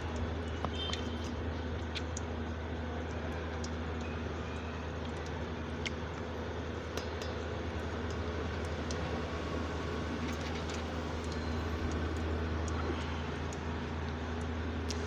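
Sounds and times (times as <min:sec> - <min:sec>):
constant low hum: 0:00.0 - 0:15.0.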